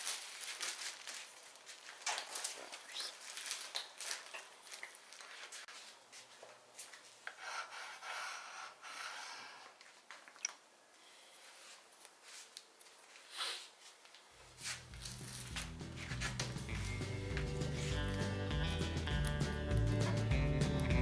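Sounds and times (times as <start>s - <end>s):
hands rubbing and scraping: 11.5s - 21.0s.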